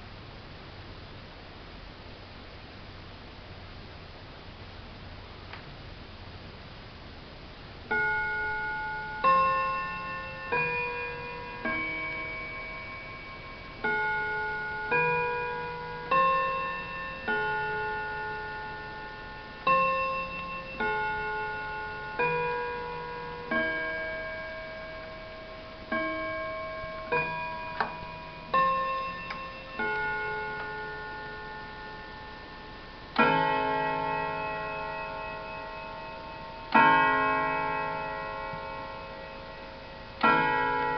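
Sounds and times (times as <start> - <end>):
clock chime melody: 7.9 - 40.9
clock ticking: 33.0 - 40.9.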